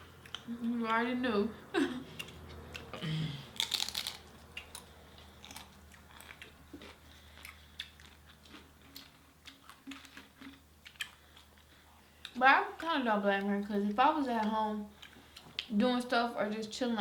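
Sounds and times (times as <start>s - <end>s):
chewing with crackling clicks: 0.1s - 1.0s, 2.1s - 3.0s, 3.6s - 13.5s, 14.4s - 15.7s
crunchy bite: 2.8s - 8.7s.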